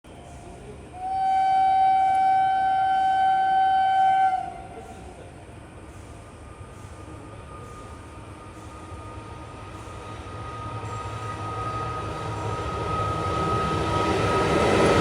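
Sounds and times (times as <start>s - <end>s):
low train rumble: 0.1s - 15.0s
train horn blast: 1.0s - 4.8s.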